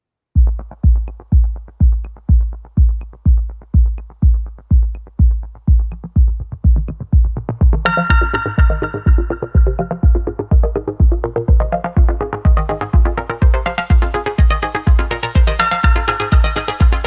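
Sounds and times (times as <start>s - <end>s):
hi-hat ticks: 0.4s - 11.9s
heavy bass kick drum: 0.4s - 17.0s
bright synth chord: 7.9s - 10.4s.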